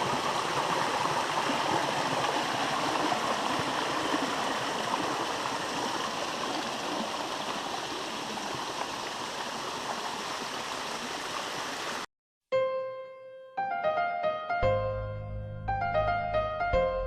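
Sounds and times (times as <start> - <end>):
stream rushing over rocks: 0.0 - 12.1.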